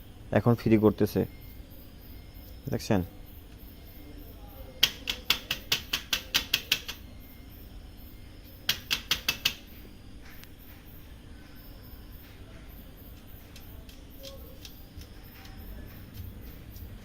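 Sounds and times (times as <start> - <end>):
plastic gear rapid clicks: 4.8 - 7.0.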